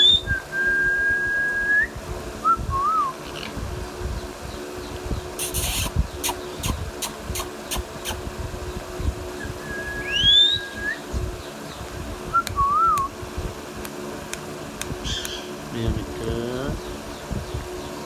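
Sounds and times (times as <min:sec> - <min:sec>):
parakeet whistling: 0:05.4 - 0:08.2, 0:09.5 - 0:11.1, 0:15.0 - 0:15.5.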